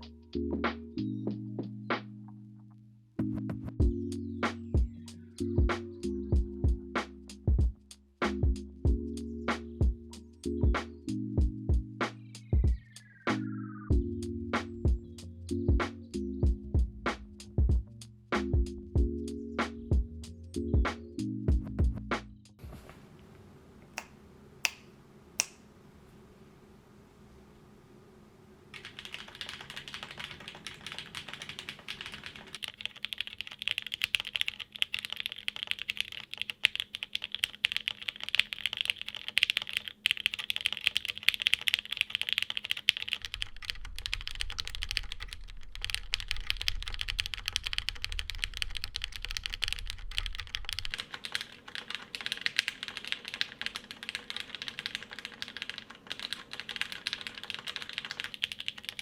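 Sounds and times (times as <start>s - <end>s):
faint low hum: 22.6s - 32.6s, 39.7s - 59.0s
mechanical keyboard typing: 28.8s - 59.0s.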